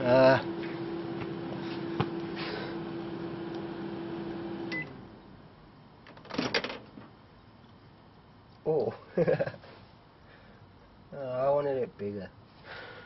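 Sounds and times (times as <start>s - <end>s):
microwave oven humming: 0.0s - 5.4s
microwave beep: 3.2s - 5.0s.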